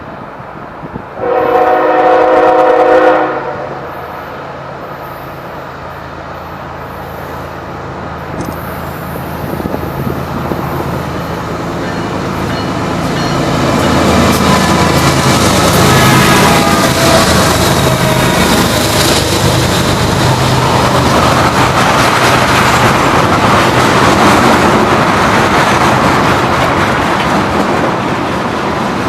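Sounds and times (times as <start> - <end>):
approaching train rumble: 0.0 - 29.0
train horn blast: 1.2 - 4.0, 15.7 - 18.6.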